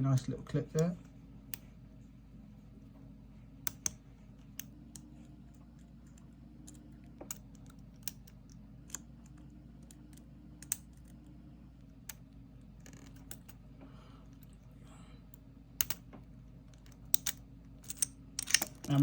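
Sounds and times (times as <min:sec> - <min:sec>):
faint steady hum: 0:00.0 - 0:19.0
sharp metallic clicks of lock picking: 0:09.8 - 0:11.2, 0:16.7 - 0:19.0.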